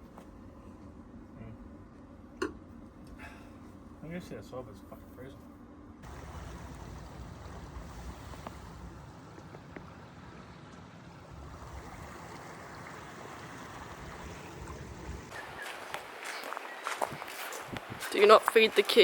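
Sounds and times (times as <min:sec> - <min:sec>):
wind gusting on microphone: 0:11.3 - 0:19.0.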